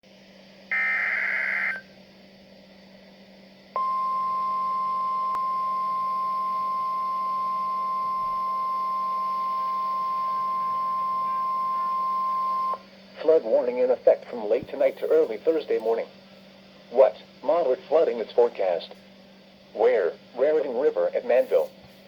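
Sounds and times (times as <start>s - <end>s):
faint low hum: 0.1s - 22.0s
warbling data tones: 0.7s - 1.8s.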